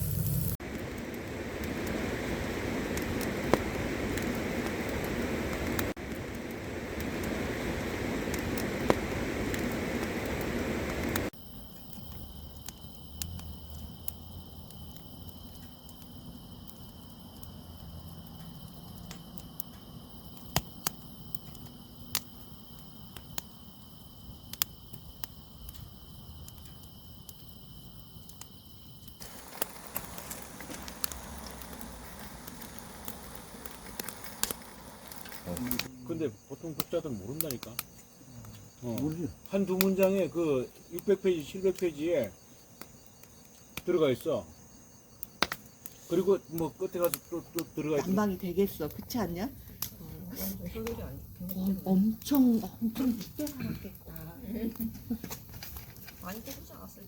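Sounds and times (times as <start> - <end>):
steady rushing noise: 0.0 - 11.3
campfire crackling and popping: 0.0 - 57.0
insects chirring: 0.0 - 57.0.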